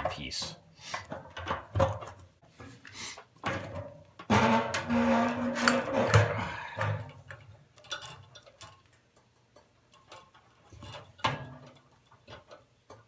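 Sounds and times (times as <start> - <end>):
metal parts clicking and scraping: 4.4 - 9.0.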